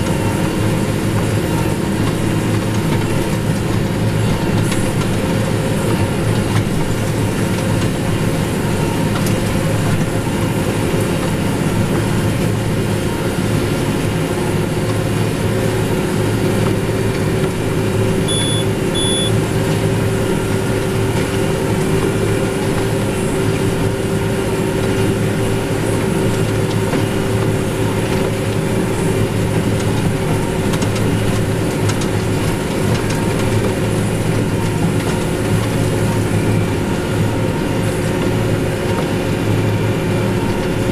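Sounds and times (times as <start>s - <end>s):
baler working noise: 0.0s - 40.9s
tractor engine drone: 0.0s - 40.9s
short high beeps: 18.3s - 19.4s.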